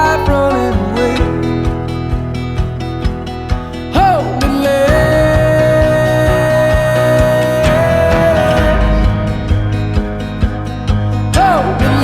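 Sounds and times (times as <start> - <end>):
guitar: 0.0 - 12.0
low drum beat: 4.0 - 12.0.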